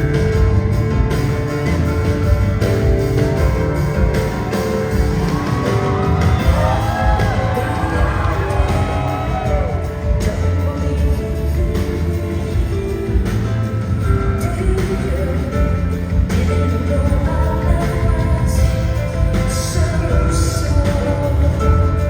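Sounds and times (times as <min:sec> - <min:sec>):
live rock music: 0:00.0 - 0:22.0
voices singing over band: 0:05.3 - 0:13.4.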